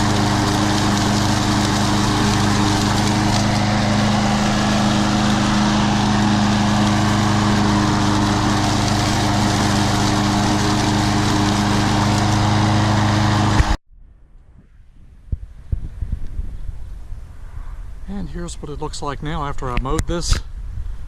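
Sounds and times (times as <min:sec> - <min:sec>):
lawn mower engine running: 0:00.0 - 0:13.8.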